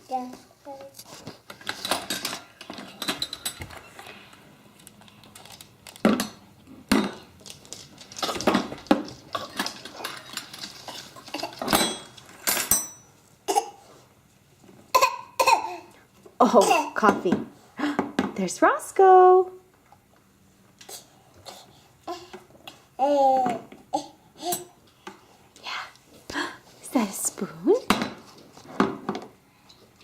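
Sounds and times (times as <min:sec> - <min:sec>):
dishes and cutlery clinking: 0:01.5 - 0:04.0, 0:05.4 - 0:13.6.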